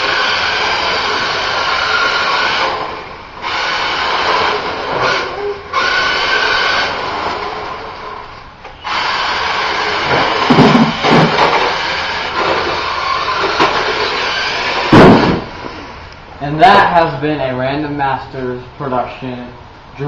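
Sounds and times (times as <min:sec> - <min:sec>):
toy car motor whining: 0:00.0 - 0:08.0, 0:08.8 - 0:10.7, 0:11.3 - 0:15.0.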